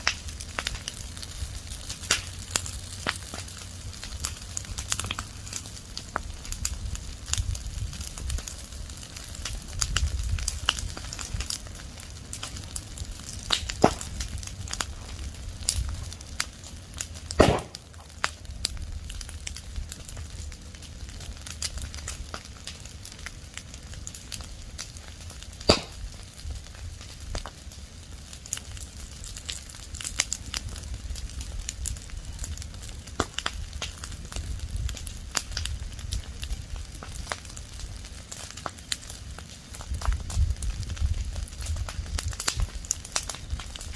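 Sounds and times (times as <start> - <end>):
fire crackling and popping: 0.0 - 43.9
low hiss of flames: 0.0 - 43.9.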